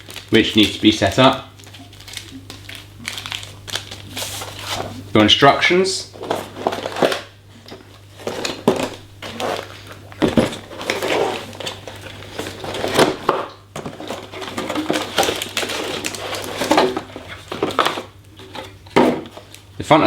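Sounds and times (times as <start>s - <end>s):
packaging rustling and crinkling: 0.0s - 5.2s, 6.1s - 19.8s.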